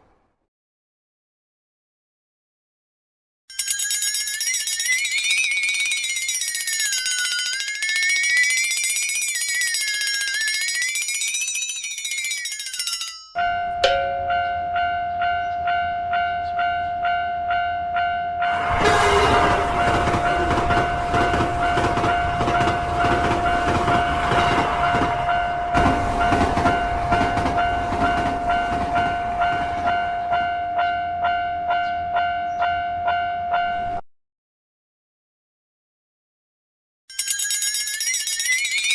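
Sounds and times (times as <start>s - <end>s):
railroad crossing bell ringing: 3.5s - 34.0s, 37.1s - 38.9s
train rumble and wheel clatter: 13.6s - 32.8s.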